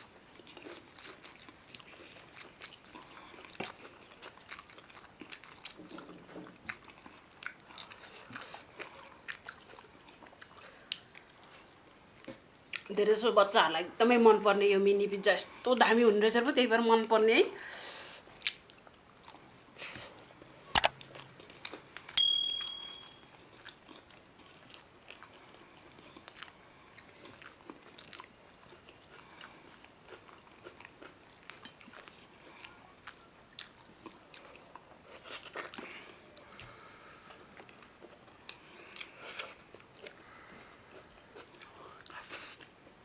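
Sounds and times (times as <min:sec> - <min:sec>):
close chewing and crunching: 0:00.0 - 0:13.1, 0:18.1 - 0:22.2, 0:23.2 - 0:43.0
short high beep: 0:22.2 - 0:23.2.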